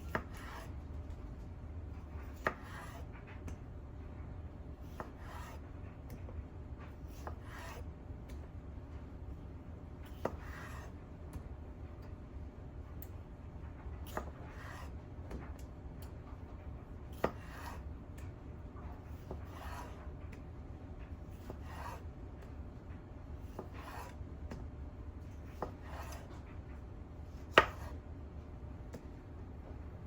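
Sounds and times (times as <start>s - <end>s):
knife slicing food: 0.0s - 0.7s, 2.2s - 3.2s, 4.8s - 5.6s, 7.0s - 7.9s, 10.1s - 11.0s, 14.1s - 15.4s, 17.1s - 17.9s, 19.1s - 20.0s, 21.3s - 22.1s, 23.5s - 24.2s, 25.5s - 26.4s, 27.4s - 28.0s.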